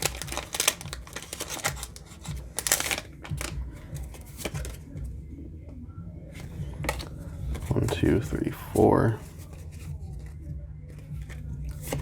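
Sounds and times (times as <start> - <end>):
foil wrapper crinkling: 0.0 - 4.8.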